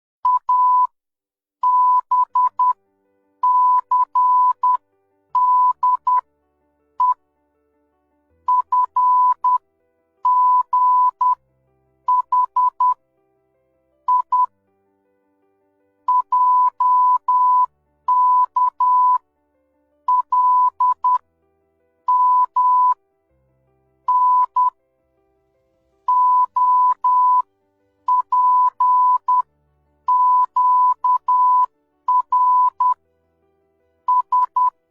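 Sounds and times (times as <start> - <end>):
morse code beeps: 0.3 - 0.9, 1.6 - 2.8, 3.4 - 4.8, 5.4 - 6.2, 7.0 - 7.2, 8.5 - 9.6, 10.3 - 11.4, 12.1 - 13.0, 14.1 - 14.5, 16.1 - 19.2, 20.1 - 21.2, 22.1 - 23.0, 24.1 - 24.8, 26.1 - 27.4, 28.1 - 29.4, 30.1 - 33.0, 34.1 - 34.8.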